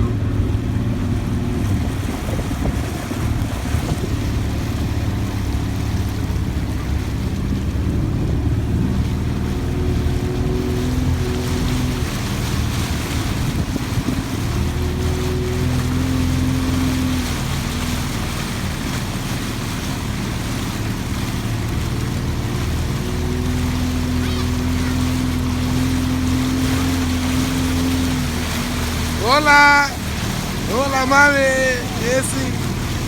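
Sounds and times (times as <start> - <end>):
wind on microphone: 0.0 - 18.8
motorboat engine running: 0.0 - 33.0
water rushing past: 0.0 - 33.0.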